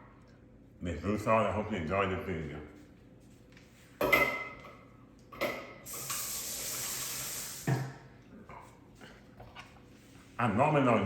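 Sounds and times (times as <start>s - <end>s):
water running from tap: 5.8s - 7.9s.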